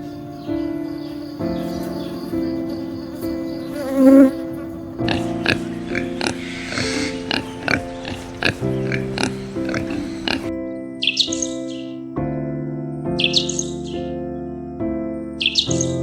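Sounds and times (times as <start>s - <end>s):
music of sustained chords: 0.0s - 16.0s.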